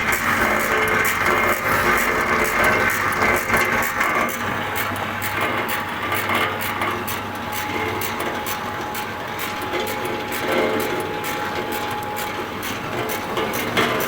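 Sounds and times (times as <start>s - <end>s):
machine hum: 0.0s - 6.1s.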